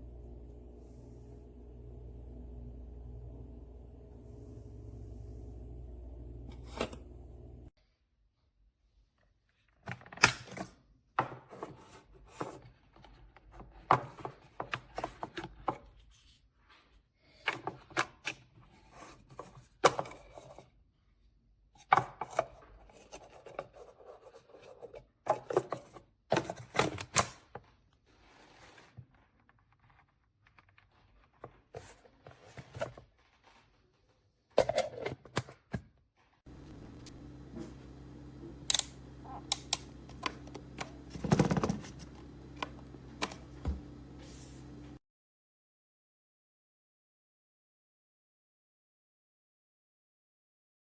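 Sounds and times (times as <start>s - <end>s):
steady low hum: 0.0s - 7.7s, 36.5s - 45.0s.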